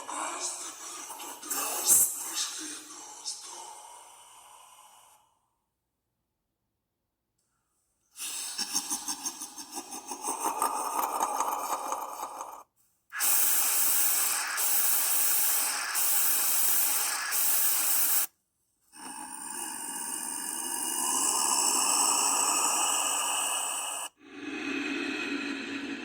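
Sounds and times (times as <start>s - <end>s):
breathy rasping hiss: 0.0s - 5.2s, 13.2s - 18.3s, 19.0s - 26.0s.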